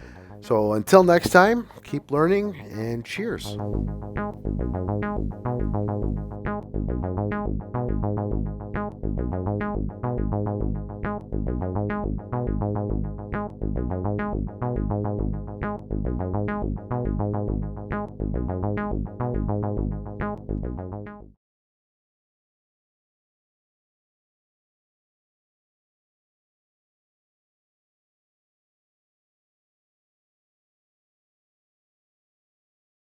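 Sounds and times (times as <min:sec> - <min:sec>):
steady beat: 0:00.5 - 0:03.6.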